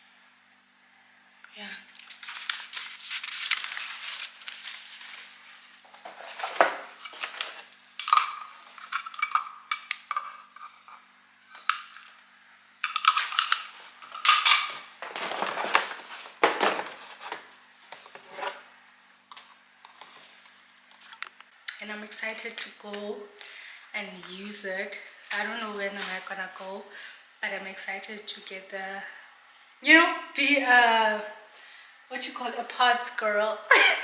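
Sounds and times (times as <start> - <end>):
packaging rustling: 1.9 - 10.8, 12.8 - 18.4
hard objects clattering: 5.8 - 12.2, 12.8 - 17.5.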